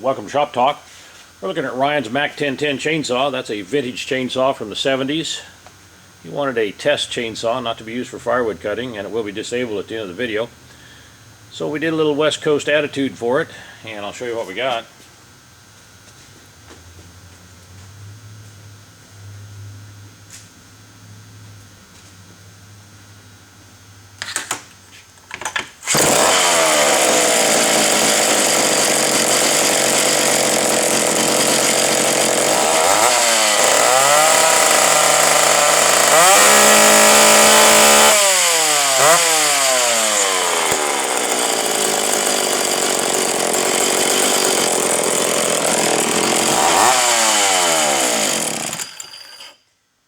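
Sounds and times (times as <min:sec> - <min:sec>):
chainsaw revving: 0:25.8 - 0:49.6.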